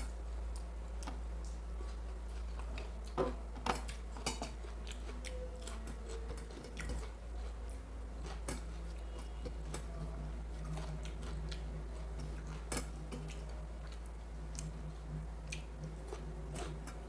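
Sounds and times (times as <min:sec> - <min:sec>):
chewing with wet mouth clicks: 0:00.5 - 0:17.0.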